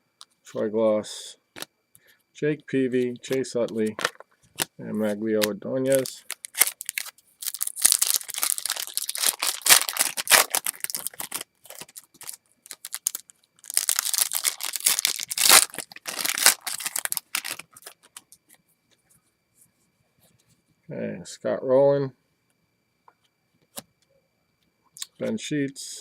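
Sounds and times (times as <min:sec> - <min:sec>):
foil wrapper tearing and crinkling: 0:05.9 - 0:18.2.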